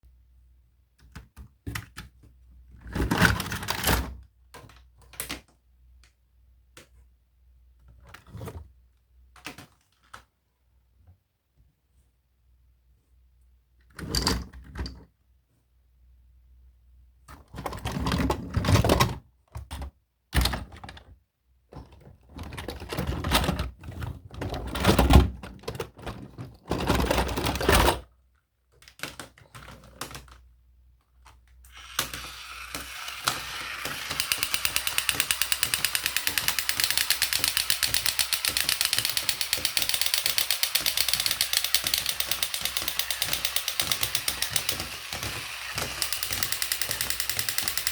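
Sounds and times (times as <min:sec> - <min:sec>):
toy motor and gears clicking: 0:31.6 - 0:47.9.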